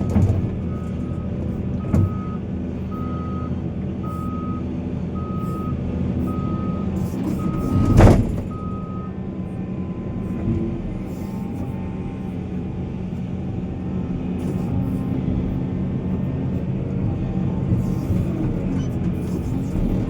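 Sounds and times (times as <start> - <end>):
reversing alarm beep: 0.0 - 9.2
heavy diesel machinery running: 0.0 - 20.0.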